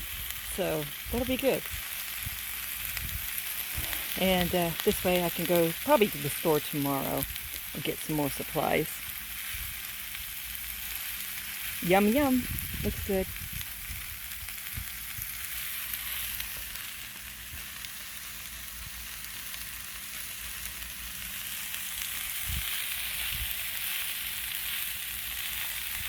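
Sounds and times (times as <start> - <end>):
food sizzling in a pan: 0.0 - 26.0.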